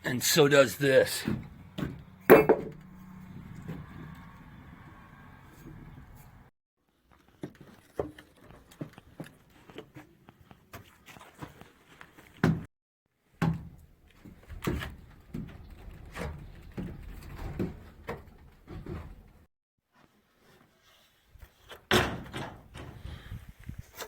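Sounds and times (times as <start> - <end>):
knocks and clunks of handling: 1.2 - 4.1.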